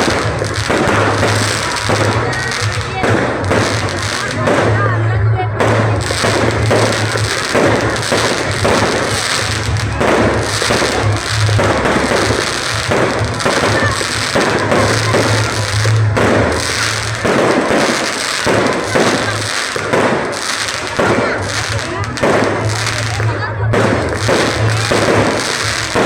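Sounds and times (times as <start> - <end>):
fireworks bursting and crackling: 0.0 - 26.0
loud music: 0.0 - 26.0.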